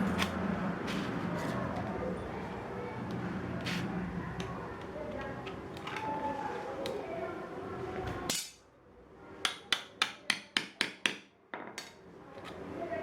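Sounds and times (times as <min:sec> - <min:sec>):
hammer tapping: 0:09.4 - 0:11.3.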